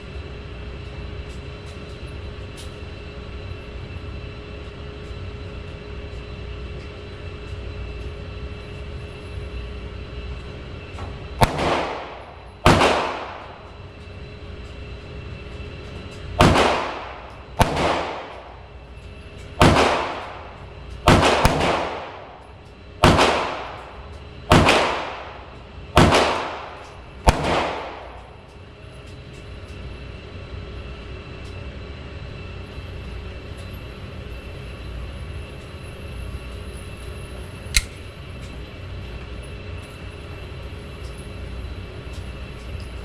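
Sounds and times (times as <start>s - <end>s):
steady background hum: 0.0s - 43.0s
pistol shots echoing: 11.4s - 13.5s, 16.4s - 18.4s, 19.6s - 20.4s, 21.1s - 22.3s, 23.0s - 23.8s, 24.5s - 25.4s, 26.0s - 28.2s
sharp click: 37.7s - 38.0s.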